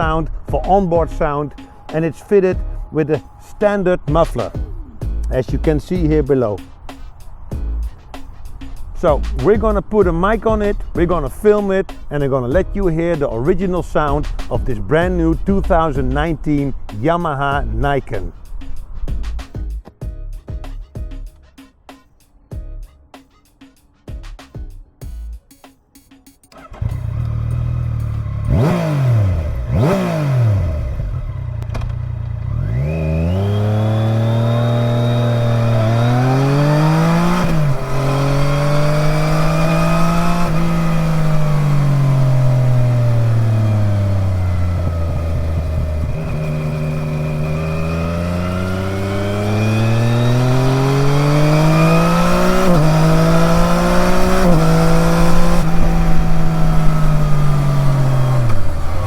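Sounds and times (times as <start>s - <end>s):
motorcycle engine revving and accelerating: 26.5s - 59.0s.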